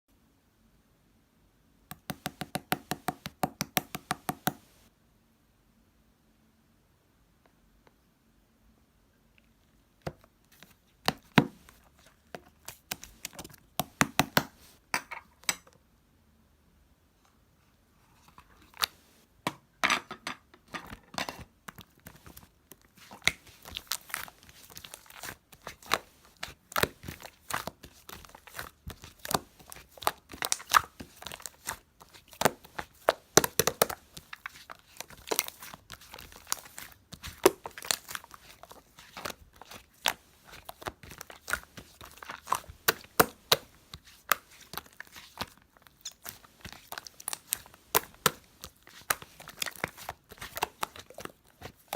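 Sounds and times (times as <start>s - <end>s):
slime squished by hand: 21.7s - 51.9s.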